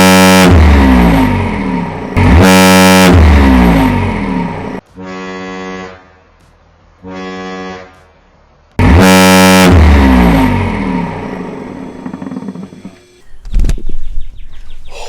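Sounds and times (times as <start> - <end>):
ship horn blasts: 0.0 - 6.4, 7.0 - 8.2, 8.8 - 12.4.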